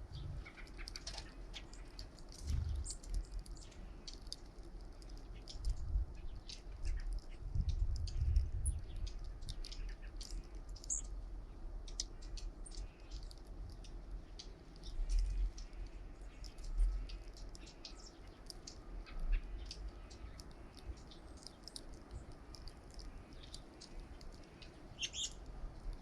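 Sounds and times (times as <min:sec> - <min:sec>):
small birds ticking and chipping: 0:00.0 - 0:26.0
wind buffeting microphone: 0:02.4 - 0:03.1, 0:05.5 - 0:09.8.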